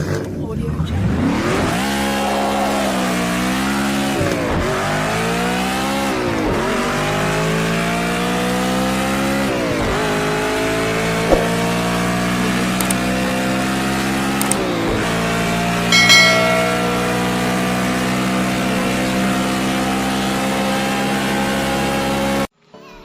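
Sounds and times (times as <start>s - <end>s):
racing engine revving: 0.9s - 15.8s, 18.8s - 22.5s.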